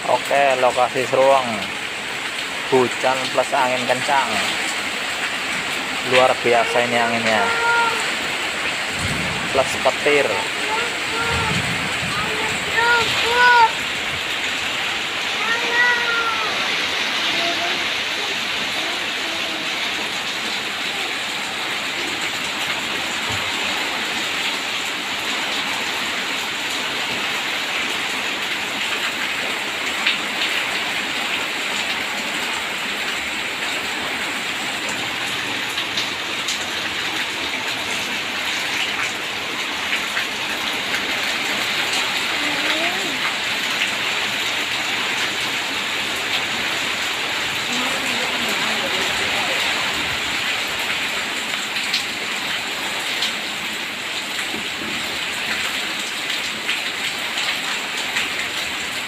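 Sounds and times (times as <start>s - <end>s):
heavy rain pouring: 0.0s - 59.0s
strong wind: 8.8s - 9.6s, 10.6s - 15.2s.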